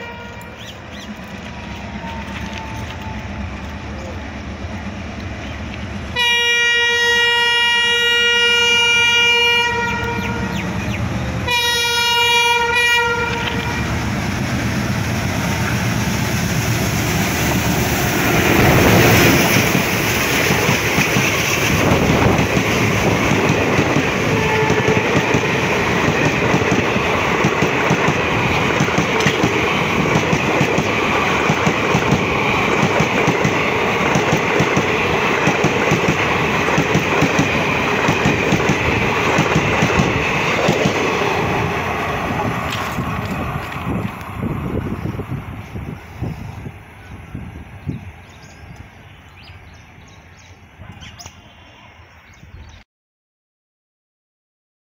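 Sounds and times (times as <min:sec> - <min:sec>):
locomotive horn blasts: 0:00.0 - 0:00.6, 0:06.1 - 0:10.7, 0:11.4 - 0:14.0, 0:24.2 - 0:25.8
train wheels clattering on rails: 0:17.8 - 0:42.0.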